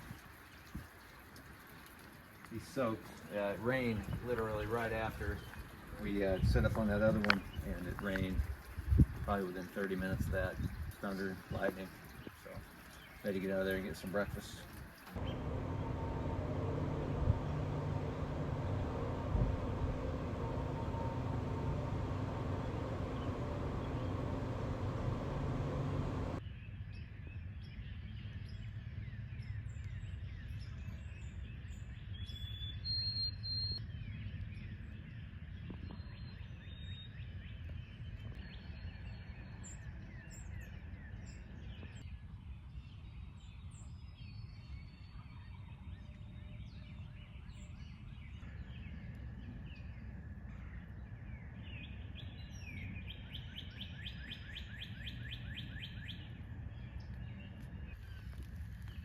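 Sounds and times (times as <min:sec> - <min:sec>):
low rumble of wind: 0:00.0 - 0:13.2, 0:13.9 - 0:32.4, 0:33.8 - 0:59.0
songbirds chirping: 0:00.0 - 0:26.4.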